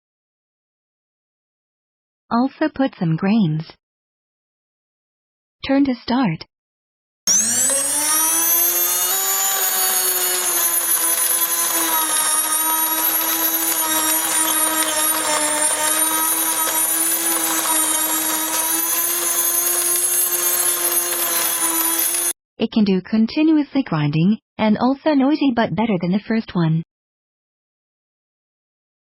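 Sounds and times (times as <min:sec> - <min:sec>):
grain mill motor whine: 0:07.3 - 0:22.4.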